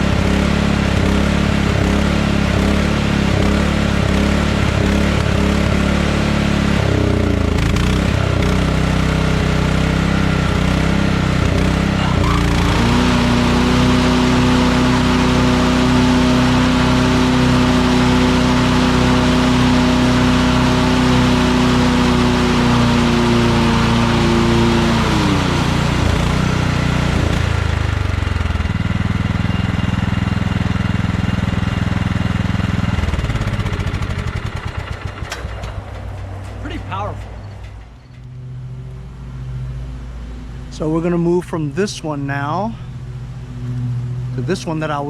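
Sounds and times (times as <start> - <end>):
lawn tractor engine running: 0.0 - 45.0.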